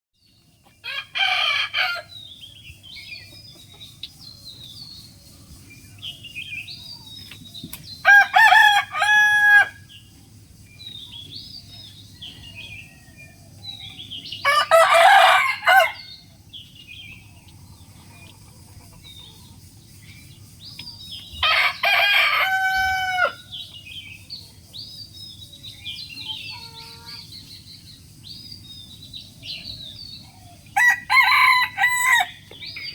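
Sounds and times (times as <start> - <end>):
rooster crowing: 0.8 - 2.1, 8.0 - 9.8, 14.4 - 16.2, 21.4 - 23.5, 30.8 - 32.5.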